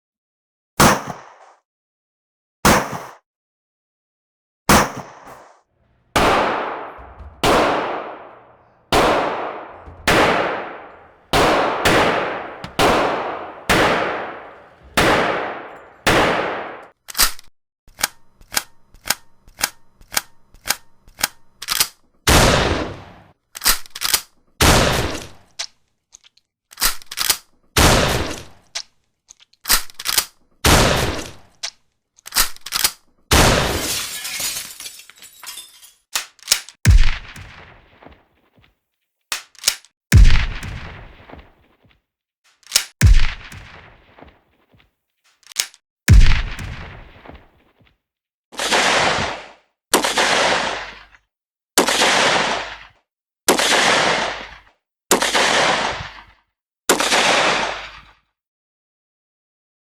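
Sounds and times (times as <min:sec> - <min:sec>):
gunshots: 0:04.7 - 0:16.9, 0:22.3 - 0:23.2, 0:36.2 - 0:38.2, 0:39.3 - 0:41.6, 0:42.7 - 0:44.4, 0:45.5 - 0:47.6, 0:48.6 - 0:51.0, 0:51.8 - 0:52.9, 0:53.5 - 0:56.3.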